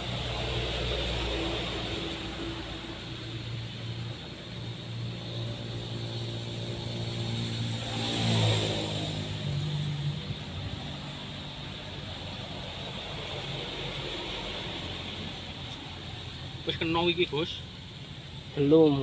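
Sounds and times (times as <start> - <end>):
vehicles passing on road: 0.0 - 19.0.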